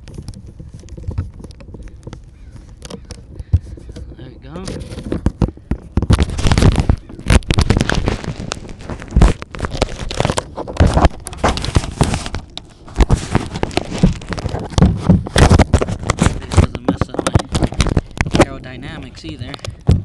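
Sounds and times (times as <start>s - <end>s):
packing tape crackling and crinkling: 0.0s - 20.0s.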